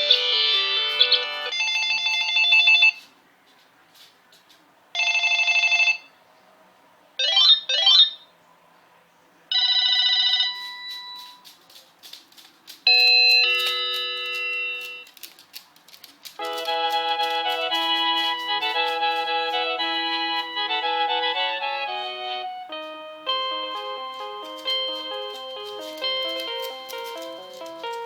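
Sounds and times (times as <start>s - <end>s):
electronic phone ringtones: 0.0s - 3.0s, 5.0s - 6.1s, 9.5s - 11.4s, 12.9s - 15.0s, 16.4s - 26.7s.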